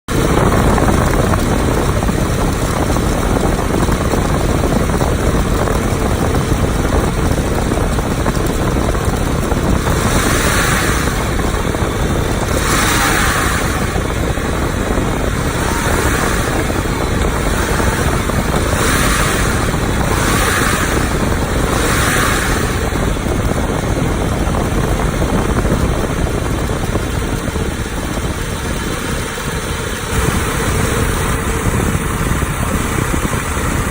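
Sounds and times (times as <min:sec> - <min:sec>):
accessory belt drive noise: 0:00.1 - 0:33.8
car engine running: 0:00.1 - 0:33.9
hissy noise bursts: 0:09.8 - 0:23.6.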